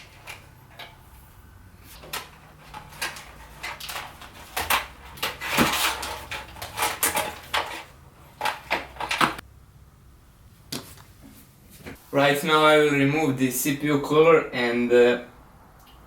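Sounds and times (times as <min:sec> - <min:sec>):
computer parts clicking and rattling: 0:02.0 - 0:09.4.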